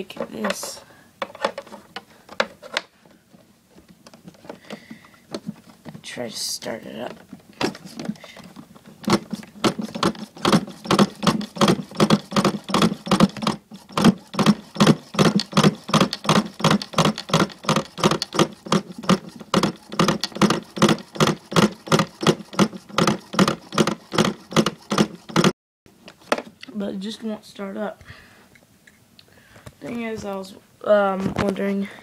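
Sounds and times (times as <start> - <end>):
small engine cranking: 9.0 - 25.5.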